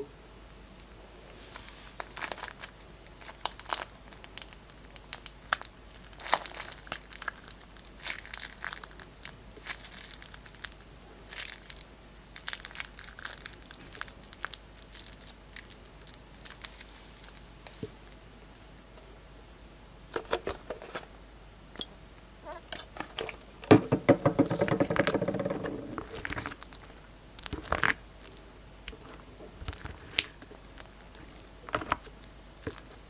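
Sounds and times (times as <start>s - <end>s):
slime crinkling and popping: 1.6s - 18.0s, 21.7s - 33.0s.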